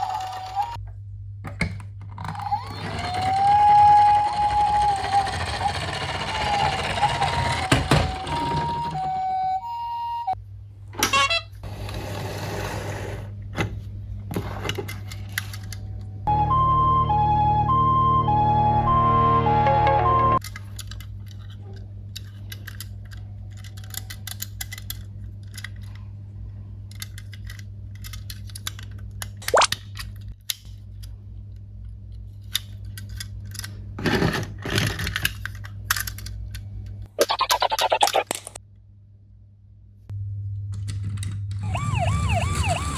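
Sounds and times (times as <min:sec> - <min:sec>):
toy two-tone siren: 0:00.0 - 0:00.8, 0:02.3 - 0:10.4, 0:16.3 - 0:20.4, 0:41.6 - 0:42.9.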